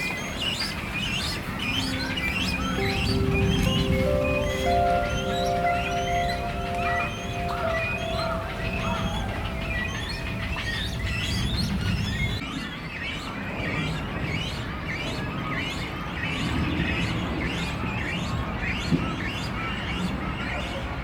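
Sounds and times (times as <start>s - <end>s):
flock of small birds chirping: 0.0s - 13.4s.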